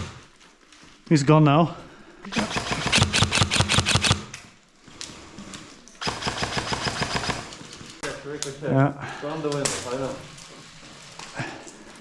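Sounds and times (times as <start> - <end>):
airsoft gun rapid fire: 0.0 - 0.3, 2.3 - 4.4, 6.0 - 7.5.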